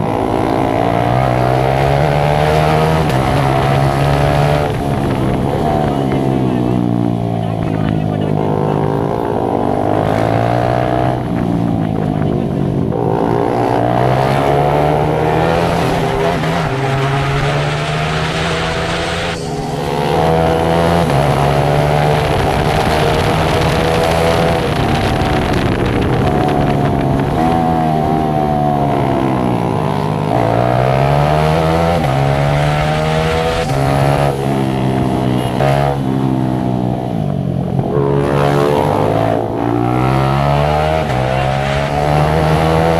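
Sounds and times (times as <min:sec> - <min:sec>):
motorcycle engine accelerating: 0:00.0 - 0:42.9.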